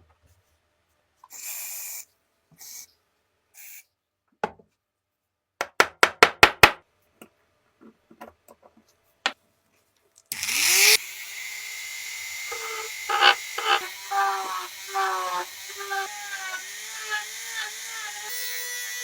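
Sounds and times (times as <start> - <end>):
small electric power tool running: 10.3 - 19.0.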